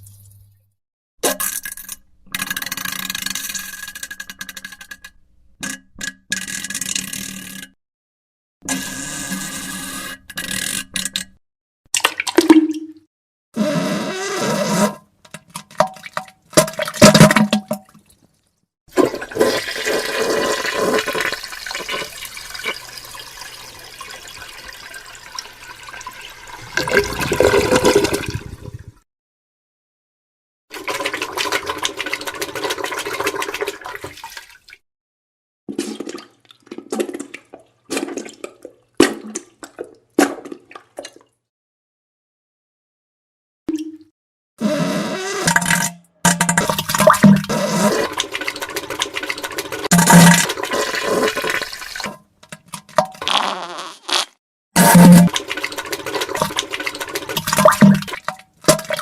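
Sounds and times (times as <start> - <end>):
wet fart sounds: 18.9 - 21.4, 26.7 - 29.0, 44.6 - 48.3, 49.9 - 51.7, 53.2 - 55.4
toilet flushing: 18.9 - 29.0, 30.7 - 34.4, 46.6 - 52.2, 54.8 - 58.2.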